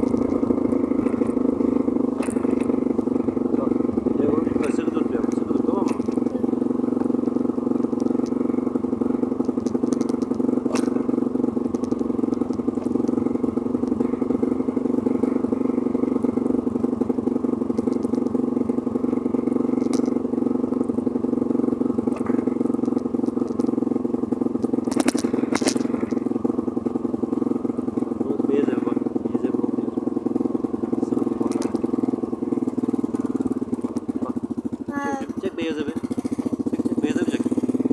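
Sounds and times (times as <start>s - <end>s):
engine running steadily: 0.0s - 37.9s
short clattering clicks: 24.6s - 26.2s.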